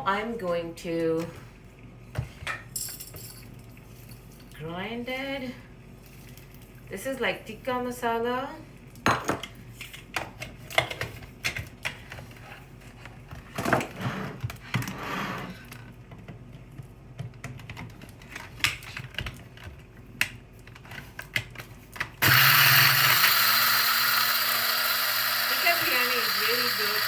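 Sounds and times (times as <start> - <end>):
electric spice grinder running: 22.2 - 27.0.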